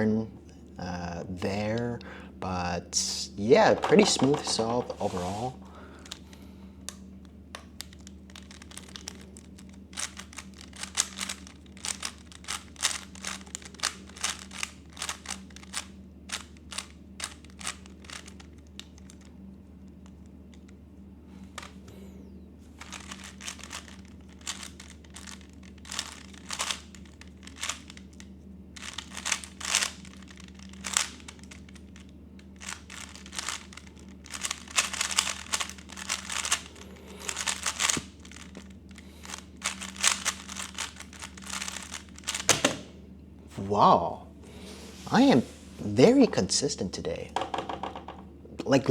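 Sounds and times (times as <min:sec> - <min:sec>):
steady low hum: 0:00.0 - 0:48.9
plastic puzzle cube clicking: 0:07.8 - 0:19.2, 0:22.8 - 0:28.0, 0:28.8 - 0:36.7, 0:37.3 - 0:38.6, 0:39.2 - 0:42.8.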